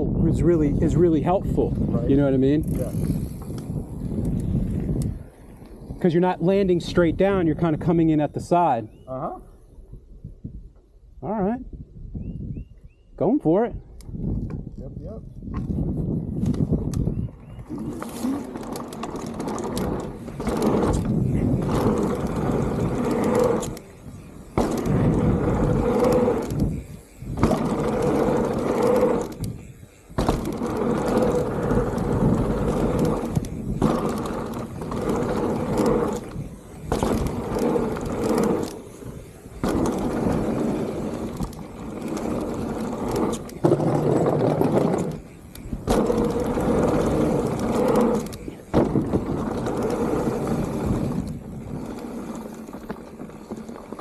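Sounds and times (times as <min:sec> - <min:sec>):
bike rattling: 0:00.0 - 0:08.0, 0:14.4 - 0:54.0
bike tyres rolling over dirt: 0:00.0 - 0:08.0, 0:15.3 - 0:54.0
bike landing knocks: 0:30.2 - 0:31.2, 0:39.6 - 0:41.3.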